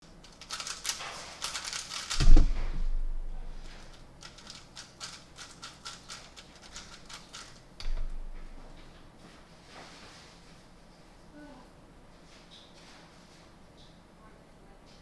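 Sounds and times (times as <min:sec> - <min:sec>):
puzzle cube layers clicking: 0:00.3 - 0:08.3
heavy thumps: 0:01.0 - 0:04.1, 0:06.2 - 0:09.0.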